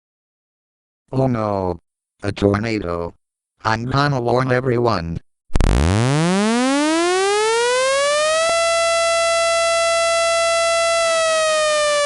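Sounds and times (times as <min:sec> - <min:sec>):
tornado siren winding up: 0:05.5 - 0:12.0.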